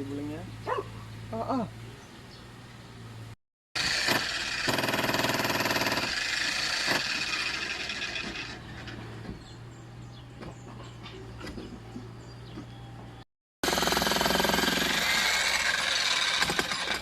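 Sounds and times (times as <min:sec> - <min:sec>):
electric jackhammer hammering: 0:03.8 - 0:08.6, 0:13.6 - 0:17.0.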